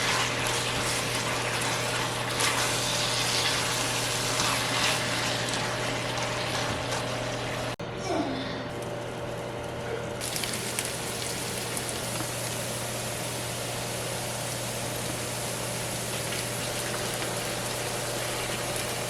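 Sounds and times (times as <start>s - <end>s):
tap water running: 0.0s - 7.8s, 10.2s - 19.0s.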